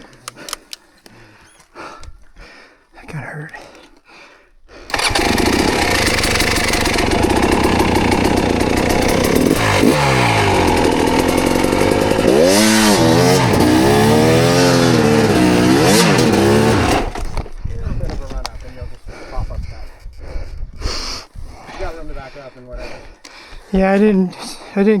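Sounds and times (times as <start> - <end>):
dirt bike engine revving: 4.9 - 17.4.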